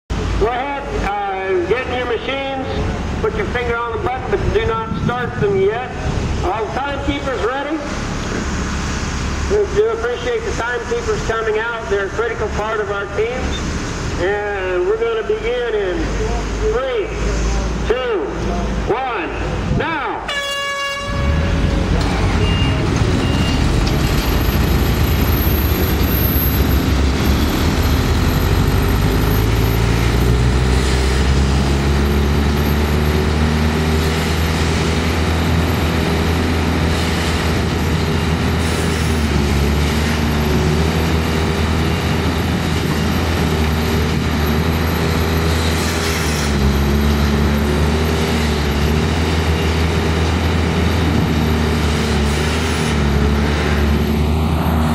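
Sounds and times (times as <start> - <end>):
brief pitched tone: 21.0 - 24.7
machine engines running: 21.4 - 54.9.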